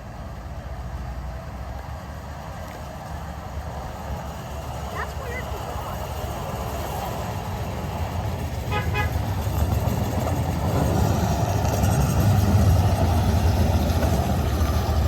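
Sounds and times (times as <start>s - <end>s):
train rumbling: 0.0s - 15.0s
train horn toot: 8.7s - 9.2s.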